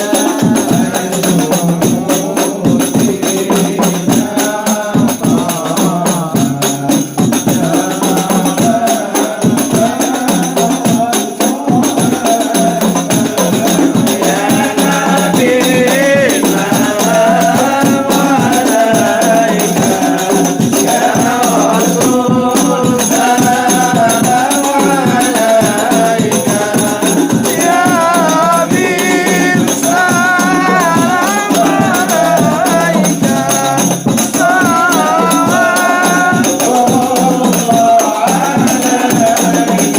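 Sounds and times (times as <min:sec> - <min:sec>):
frame drums with jingles: 0:00.0 - 0:39.9
group devotional singing: 0:00.0 - 0:39.9.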